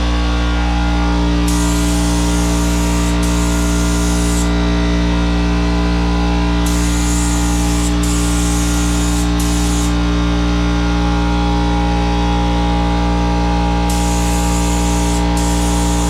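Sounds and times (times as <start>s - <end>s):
steady low hum: 0.0s - 16.0s
paint spray gun hissing: 1.5s - 4.5s, 6.6s - 10.0s, 13.9s - 16.0s.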